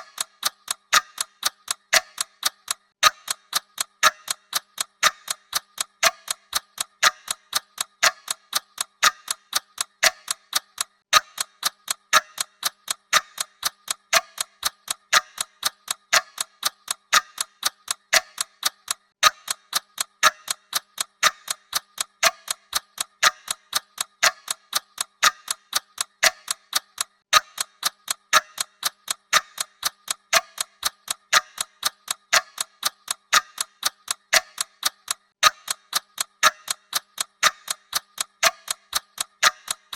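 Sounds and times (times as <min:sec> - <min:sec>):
clock ticking: 0:00.0 - 0:39.9.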